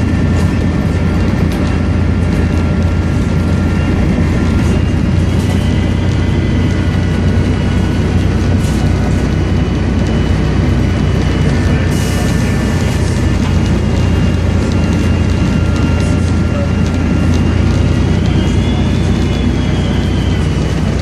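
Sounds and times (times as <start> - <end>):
diesel bus engine drone: 0.0 - 21.0
turbo whistle: 17.8 - 21.0.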